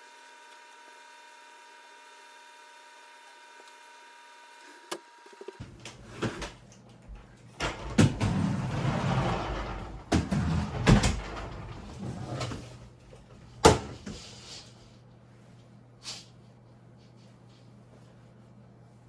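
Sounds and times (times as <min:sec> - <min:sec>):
household knocks and clunks: 0:07.6 - 0:14.2.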